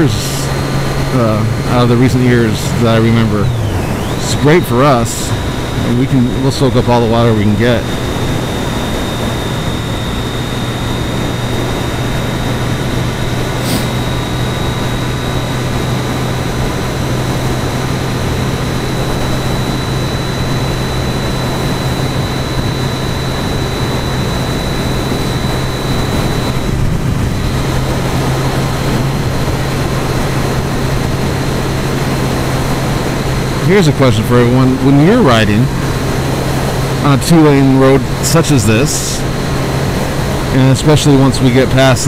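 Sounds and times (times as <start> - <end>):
motorcycle engine running: 0.0 - 42.0
wind rush: 0.1 - 33.6.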